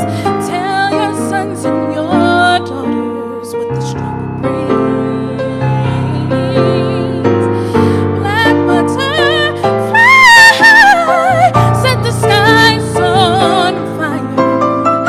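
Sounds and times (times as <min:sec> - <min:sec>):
person singing with vibrato: 0:00.0 - 0:15.0
piano: 0:00.0 - 0:15.0.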